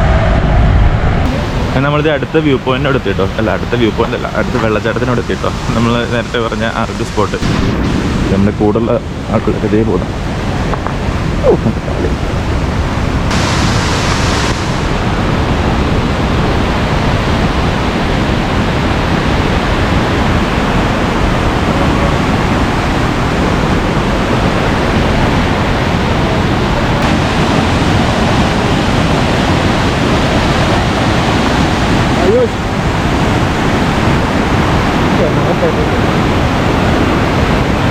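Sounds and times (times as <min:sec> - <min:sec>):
waterfall rushing: 0:01.2 - 0:37.9
brief bright hiss: 0:13.3 - 0:14.9.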